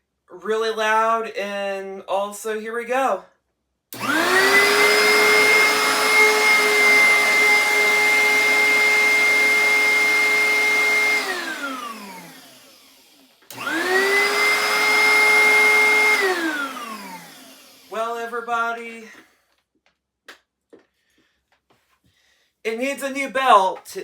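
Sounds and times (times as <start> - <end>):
vacuum cleaner motor whining: 4.0 - 19.2.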